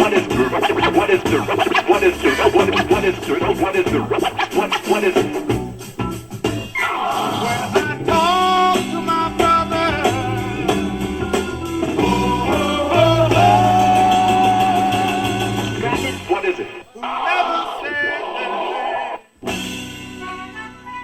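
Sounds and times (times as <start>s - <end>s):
person singing: 0.0s - 5.4s, 6.9s - 18.9s
rock band playing: 0.0s - 16.2s.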